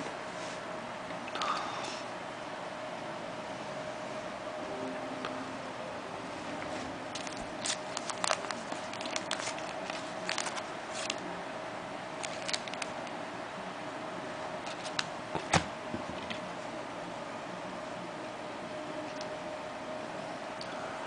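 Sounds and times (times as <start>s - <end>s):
faint steady hum: 0.0s - 21.0s
trading cards clicking and rustling: 7.2s - 11.2s, 12.2s - 13.1s, 14.7s - 15.6s.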